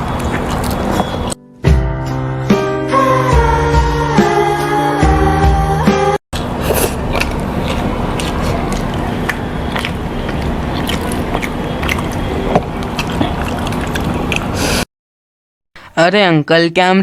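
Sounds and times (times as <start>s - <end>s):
man chewing noisily: 0.0s - 1.4s, 6.4s - 14.9s.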